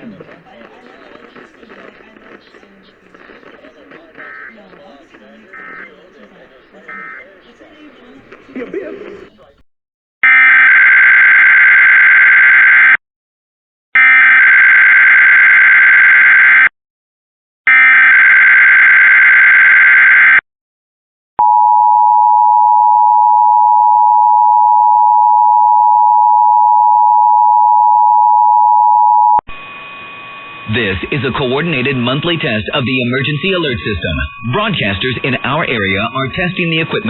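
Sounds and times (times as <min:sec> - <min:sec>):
two-tone attention signal: 0:00.0 - 0:08.3
screechy data bursts: 0:00.0 - 0:09.5, 0:29.6 - 0:37.0.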